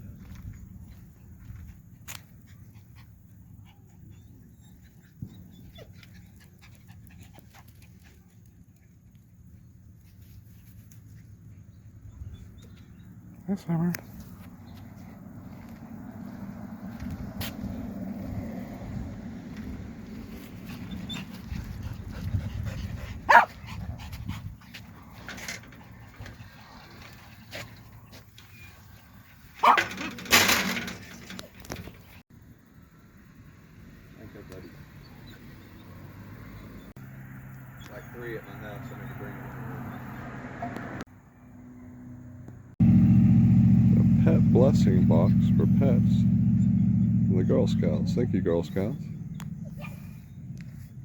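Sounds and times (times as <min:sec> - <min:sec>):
dog panting: 0:02.4 - 0:08.6, 0:20.2 - 0:28.2
dog barking: 0:23.3 - 0:23.6, 0:29.6 - 0:30.0, 0:49.6 - 0:50.1.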